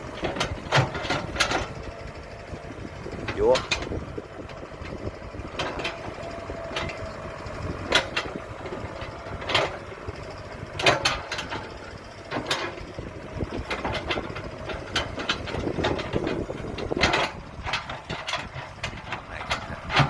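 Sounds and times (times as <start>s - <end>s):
excavator engine rumble: 0.0s - 20.0s
sharp metallic knocks and clanks: 0.2s - 1.8s, 3.3s - 4.0s, 10.8s - 12.8s, 13.6s - 20.0s.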